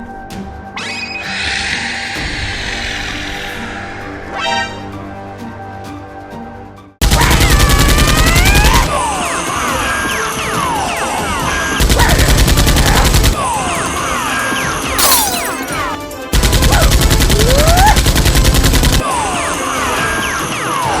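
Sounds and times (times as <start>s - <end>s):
machine gun sound effect: 16.4s - 19.0s.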